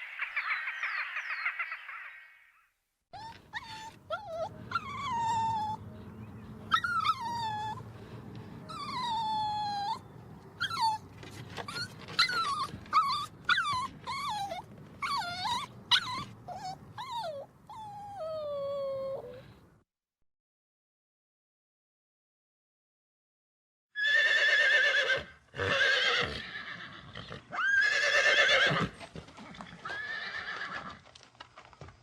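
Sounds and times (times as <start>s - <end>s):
dog whining and whimpering: 3.2s - 6.0s, 6.6s - 7.9s, 8.7s - 19.6s.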